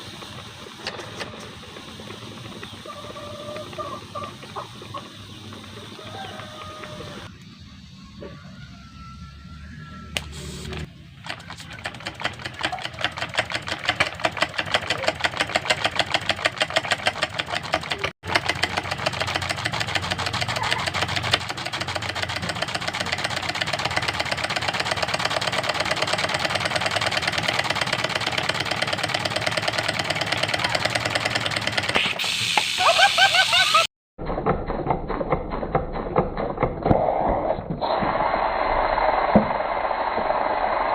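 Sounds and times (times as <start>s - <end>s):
small steam engine ticking: 0.0s - 7.4s, 11.2s - 32.1s.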